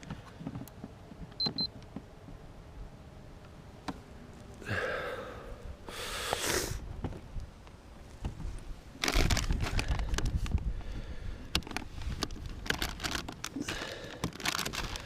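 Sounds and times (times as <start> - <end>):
rustling noise: 7.0 - 10.7, 11.6 - 15.0.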